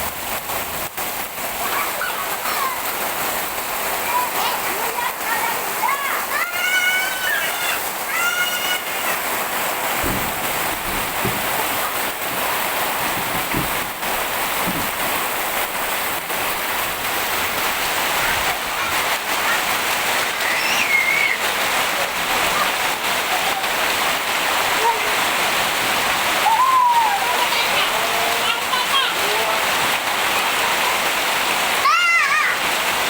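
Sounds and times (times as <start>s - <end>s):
heavy rain pouring: 0.0s - 33.0s
child's high call: 1.6s - 2.9s, 4.1s - 9.3s, 18.2s - 21.5s, 26.4s - 29.6s, 31.8s - 32.6s.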